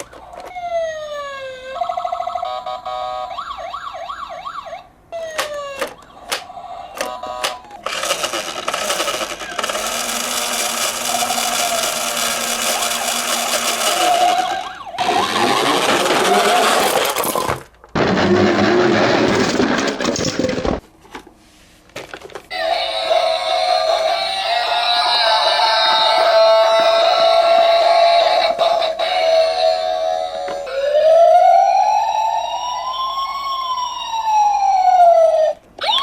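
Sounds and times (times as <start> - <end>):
toy siren wavering: 0.0 - 16.7, 22.5 - 36.0
loud noisy clatter: 7.8 - 20.8.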